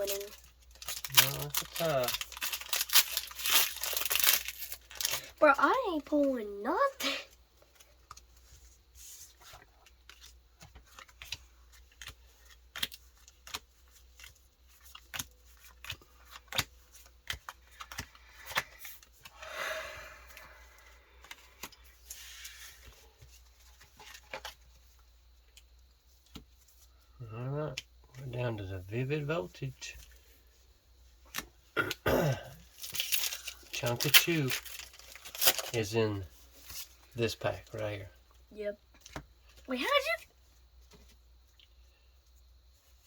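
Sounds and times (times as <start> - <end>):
cards rustling: 0.0 - 5.4, 7.6 - 19.3, 20.2 - 25.1, 32.7 - 37.3
cards flipping and sliding: 9.0 - 19.3, 21.2 - 24.6.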